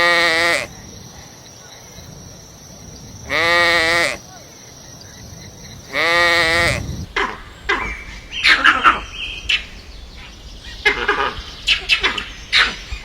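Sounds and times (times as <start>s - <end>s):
long bleat: 0.0s - 0.7s, 3.3s - 4.2s, 5.9s - 6.8s.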